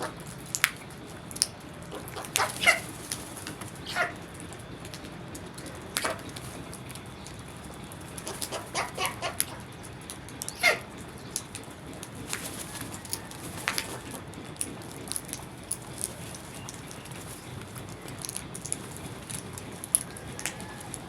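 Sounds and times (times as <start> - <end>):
small birds chirping: 0.0 - 21.0
crows cawing: 1.9 - 3.0, 3.8 - 4.3, 8.2 - 9.8, 10.4 - 11.0.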